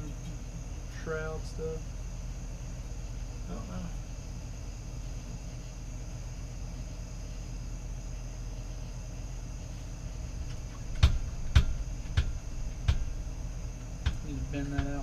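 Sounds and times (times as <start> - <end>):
crickets chirping: 0.0 - 15.0
sharp knocks on bike parts: 10.5 - 13.3, 14.0 - 15.0.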